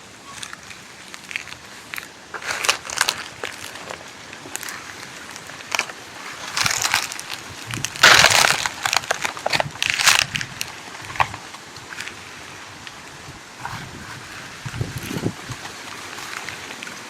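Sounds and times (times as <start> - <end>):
footsteps crunching on dry leaves: 0.0 - 17.0.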